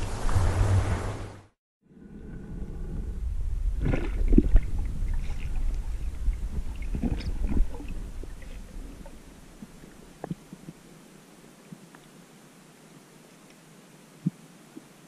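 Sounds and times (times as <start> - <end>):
low rumble: 0.0 - 10.1.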